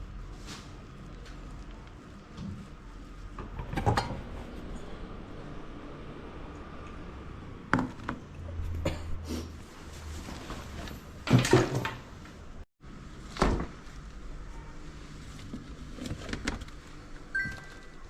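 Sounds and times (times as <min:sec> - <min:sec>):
kitchen knocks and clunks: 0:03.4 - 0:04.4, 0:11.2 - 0:12.1.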